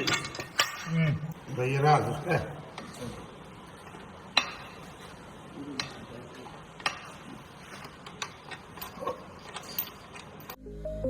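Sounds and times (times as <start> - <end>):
hand tools clicking and knocking: 0.0 - 0.9, 6.8 - 10.6.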